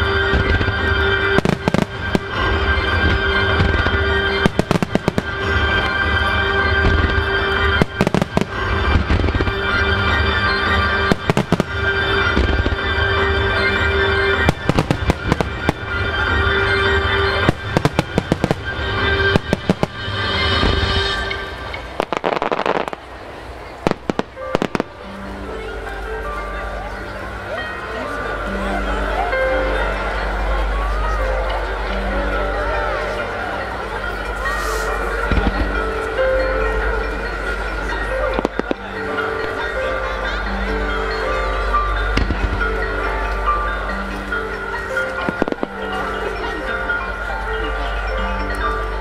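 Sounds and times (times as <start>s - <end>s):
fireworks bangs and crackles: 0.0s - 25.3s, 34.2s - 36.2s, 37.7s - 39.6s, 42.0s - 43.6s, 44.2s - 46.7s.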